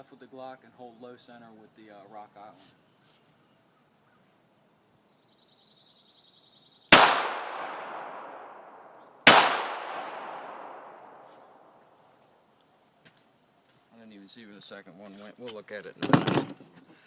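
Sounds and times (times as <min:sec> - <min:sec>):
pistol shots with echo: 0:06.9 - 0:11.1.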